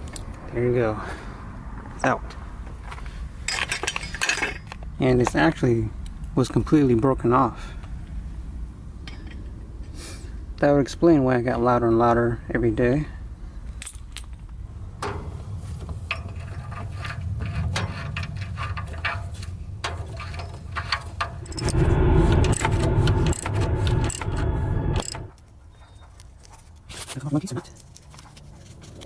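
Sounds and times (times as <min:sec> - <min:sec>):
tools clinking and scraping: 0:03.4 - 0:04.8, 0:09.0 - 0:09.5, 0:15.0 - 0:21.7
loud low hum: 0:21.2 - 0:25.4
low rumble: 0:21.2 - 0:25.4.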